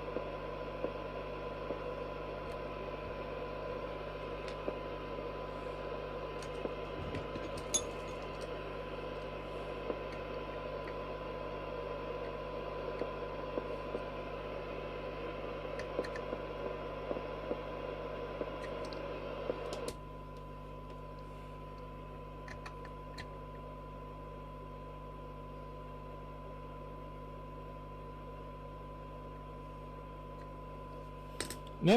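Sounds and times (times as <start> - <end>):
radio hiss: 0.0 - 20.0.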